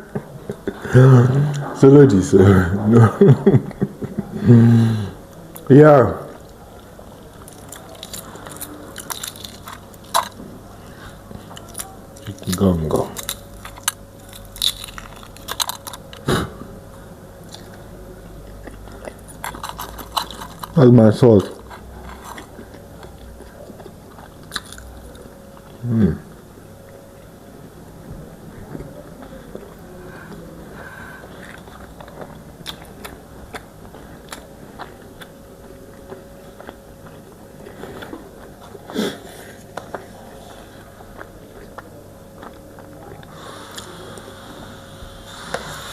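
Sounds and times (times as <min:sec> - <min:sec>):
faint steady hum: 0:00.0 - 0:45.9
person chewing food: 0:06.3 - 0:16.6, 0:17.4 - 0:20.8, 0:21.4 - 0:25.8, 0:28.6 - 0:44.4
chewing and wet mouth clicks: 0:18.4 - 0:20.8, 0:21.4 - 0:25.8.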